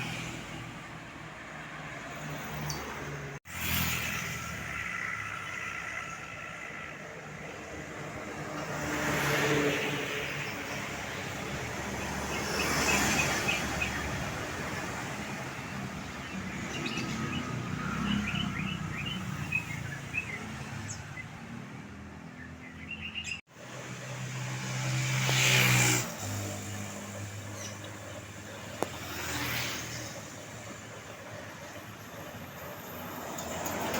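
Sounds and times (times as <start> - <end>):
vehicles passing by: 0.0 - 33.9
birds chirping: 10.1 - 23.5, 26.6 - 32.7.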